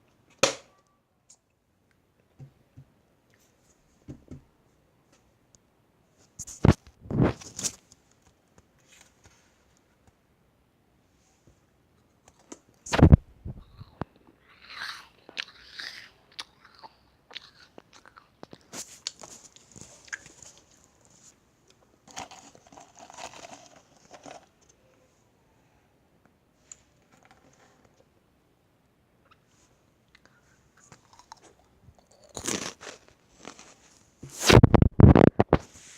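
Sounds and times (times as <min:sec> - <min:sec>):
cookies being bitten and chewed: 0:13.6 - 0:21.1, 0:21.7 - 0:24.8, 0:30.1 - 0:35.5.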